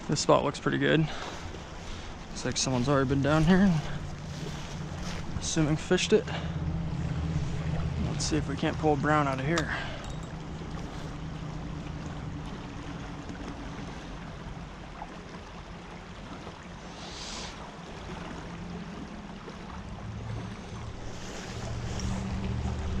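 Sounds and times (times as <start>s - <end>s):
creek water running: 0.0s - 23.0s
low hum: 1.6s - 15.9s, 17.7s - 23.0s.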